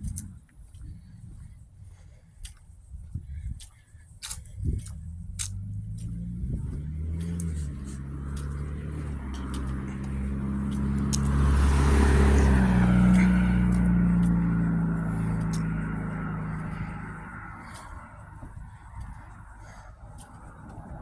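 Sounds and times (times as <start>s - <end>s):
tyre and road noise: 0.0s - 21.0s
car engine humming: 4.0s - 21.0s.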